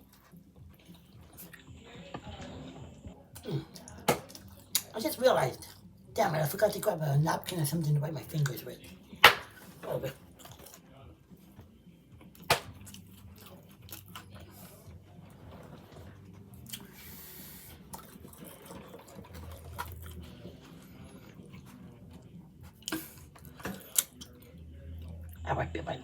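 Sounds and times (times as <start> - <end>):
faint low hum: 0.0 - 26.0
person chewing: 9.5 - 10.8, 12.1 - 25.4.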